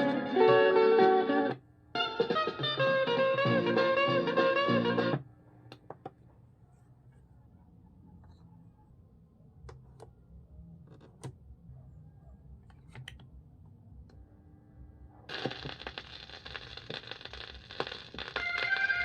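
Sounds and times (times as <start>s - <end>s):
turntable hum: 0.0s - 6.4s, 12.6s - 19.0s
crackly record hiss: 0.0s - 11.6s, 12.4s - 19.0s.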